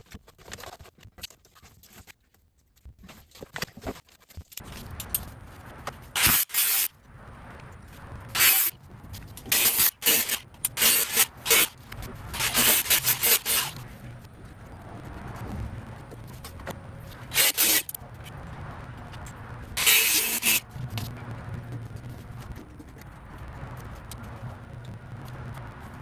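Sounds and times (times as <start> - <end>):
loud scraping and rubbing: 4.6 - 7.0, 7.8 - 26.0.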